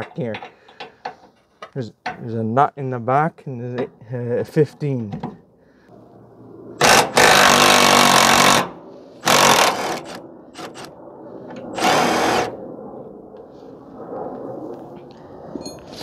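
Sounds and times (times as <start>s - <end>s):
power tool motor whine: 11.7s - 12.5s.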